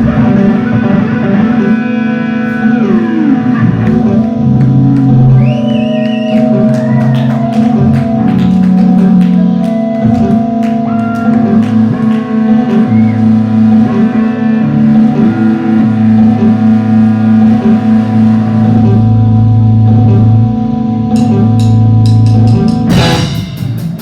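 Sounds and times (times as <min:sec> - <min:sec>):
live band music: 0:00.0 - 0:19.2, 0:21.1 - 0:24.0
sharp percussion strikes: 0:21.2 - 0:24.0.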